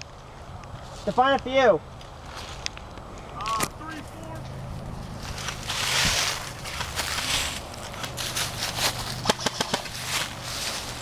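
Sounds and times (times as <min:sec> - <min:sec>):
footsteps crunching through dry leaves: 0:00.1 - 0:11.0
sharp clicks: 0:09.2 - 0:10.0.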